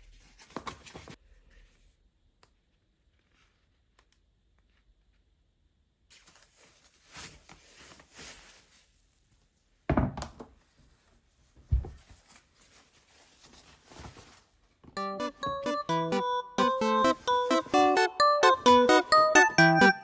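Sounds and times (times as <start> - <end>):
handling and rustling noises: 0.0 - 1.9, 6.1 - 15.0.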